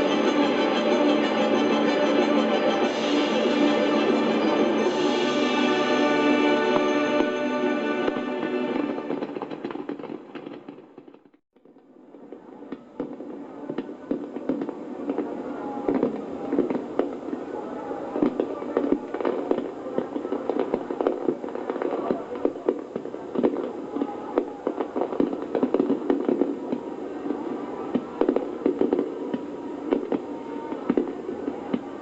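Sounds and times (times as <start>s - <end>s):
music: 0.0s - 9.6s
fireworks popping and crackling: 0.0s - 32.0s.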